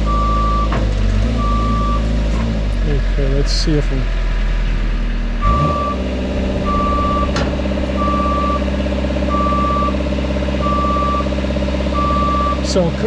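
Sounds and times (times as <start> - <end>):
motion alarm beeps: 0.1 - 0.7, 5.4 - 6.0, 6.6 - 7.4, 8.0 - 8.7, 9.3 - 10.0, 10.6 - 11.3, 11.9 - 12.6
lift motor running: 4.8 - 12.6.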